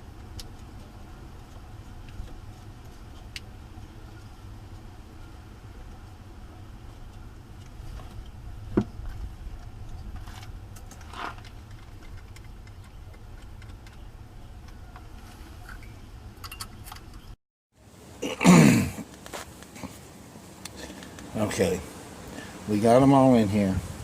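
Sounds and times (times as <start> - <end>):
steady low rumble: 0.0 - 17.4.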